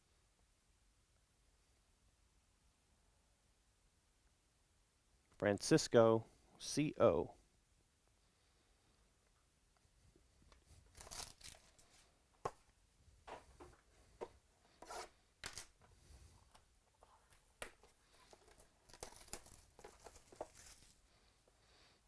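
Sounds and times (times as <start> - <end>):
card pack wrapper tearing: 10.9 - 11.9, 18.2 - 21.0
cards clicking and rustling: 10.9 - 12.6, 15.4 - 15.8, 17.3 - 21.0.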